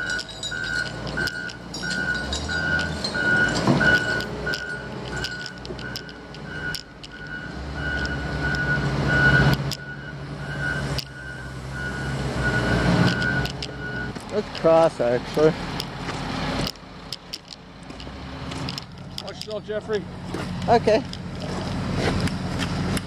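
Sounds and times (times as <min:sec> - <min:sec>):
clanks and knocks: 0:00.0 - 0:07.3
reversing alarm beeping: 0:00.0 - 0:14.2.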